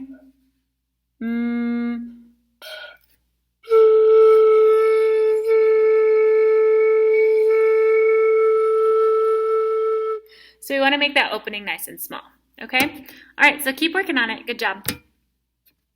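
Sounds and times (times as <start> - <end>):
flute headjoint tone: 3.6 - 10.3.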